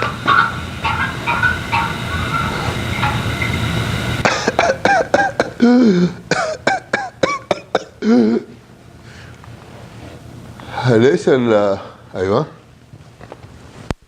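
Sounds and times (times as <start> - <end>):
rapid short coughs: 4.2 - 8.6.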